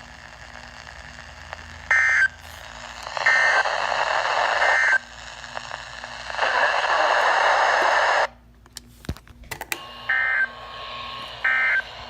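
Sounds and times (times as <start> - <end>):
buzzing data bursts: 1.7 - 6.8.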